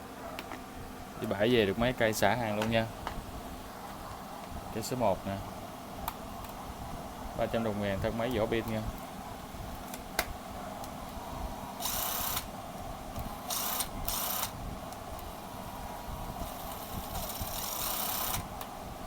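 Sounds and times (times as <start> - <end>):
cordless drill motor spinning: 11.8 - 12.5, 13.4 - 14.6, 16.4 - 18.6.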